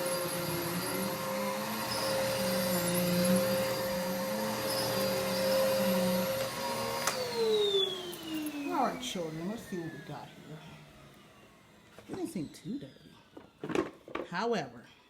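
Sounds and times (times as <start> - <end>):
vacuum cleaner motor whine: 0.0 - 14.2.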